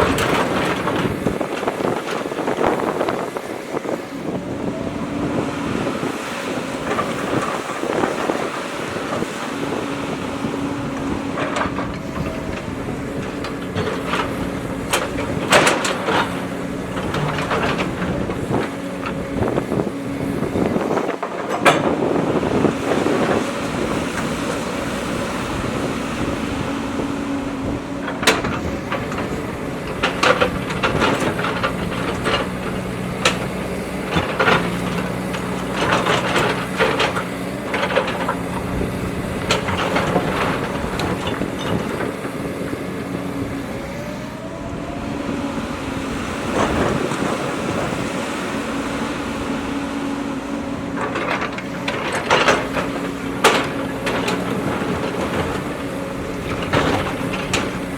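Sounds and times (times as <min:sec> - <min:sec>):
diesel engine running: 0:00.0 - 0:57.9
machine knocks and clanks: 0:11.0 - 0:19.9, 0:20.5 - 0:22.2, 0:28.0 - 0:42.9, 0:50.9 - 0:57.9.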